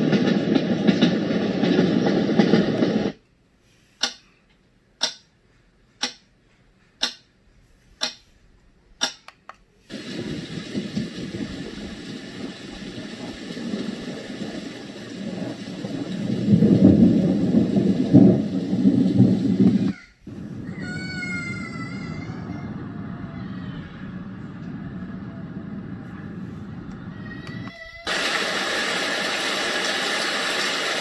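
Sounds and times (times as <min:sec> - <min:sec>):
rolling thunder: 0:00.0 - 0:03.2, 0:09.9 - 0:31.0
pendulum clock ticking: 0:04.0 - 0:08.3, 0:09.0 - 0:09.3
steady rain: 0:09.9 - 0:27.2, 0:28.0 - 0:31.0.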